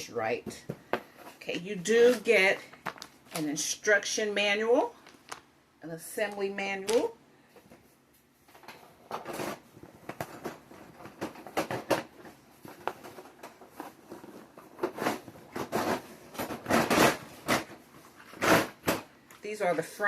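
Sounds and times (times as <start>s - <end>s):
packaging rustling and scraping: 0.8s - 3.4s, 7.5s - 19.1s.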